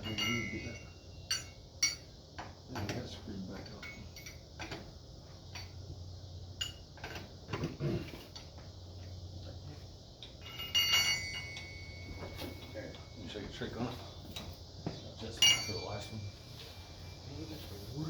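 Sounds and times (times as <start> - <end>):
sharp metal clink: 0.0 - 2.2, 10.4 - 13.4, 15.2 - 16.4.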